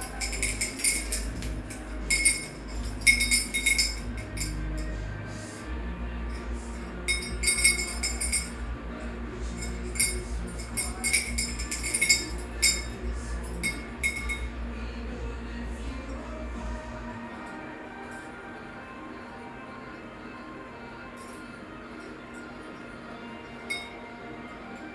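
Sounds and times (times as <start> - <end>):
small metal bell jingling: 0.0 - 18.6, 23.5 - 24.2
steady low hum: 0.0 - 24.9.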